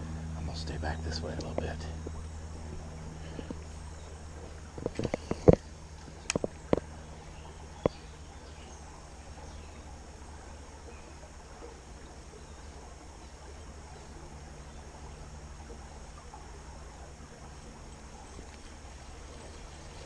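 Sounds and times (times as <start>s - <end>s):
low outdoor background hum: 0.0s - 20.0s
sharp clicks and knocks: 4.8s - 6.9s.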